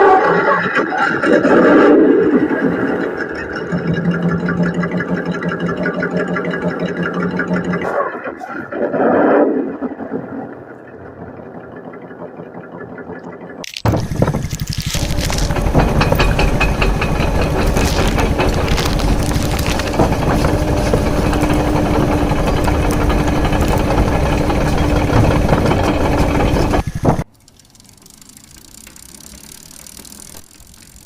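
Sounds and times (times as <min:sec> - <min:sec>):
truck engine rumbling: 0:00.0 - 0:31.0.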